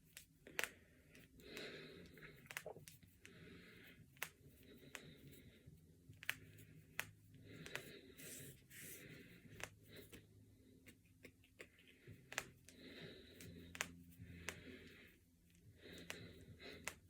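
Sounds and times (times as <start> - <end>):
knuckles cracking: 0.1 - 3.4, 4.1 - 5.4, 6.1 - 8.0, 9.5 - 10.2, 10.8 - 17.0.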